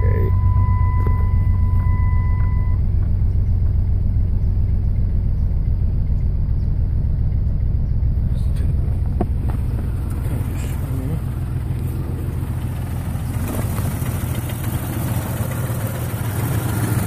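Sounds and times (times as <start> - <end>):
steady electronic beep: 0.0 - 2.9
car engine idling roughly: 0.0 - 17.0.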